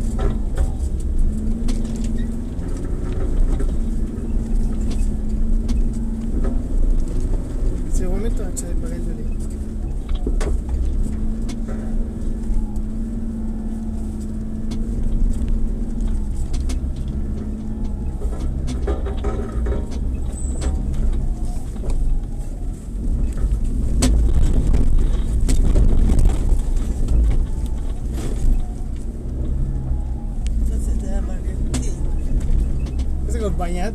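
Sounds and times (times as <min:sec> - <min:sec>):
off-road vehicle engine droning: 0:00.0 - 0:33.9
knocks and rattles: 0:14.2 - 0:22.4, 0:23.0 - 0:29.7.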